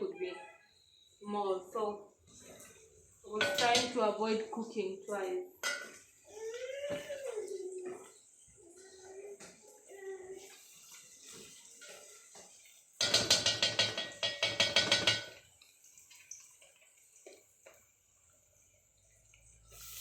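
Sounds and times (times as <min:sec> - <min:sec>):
faint kitchen clatter: 0:00.0 - 0:20.0
tap water pouring into metal pot: 0:05.6 - 0:20.0.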